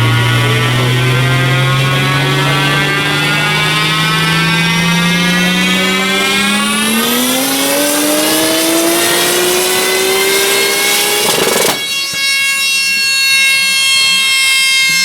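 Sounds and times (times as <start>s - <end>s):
turbocharged engine accelerating: 0.0s - 12.4s
high-pitched buzzing tone: 0.0s - 13.7s.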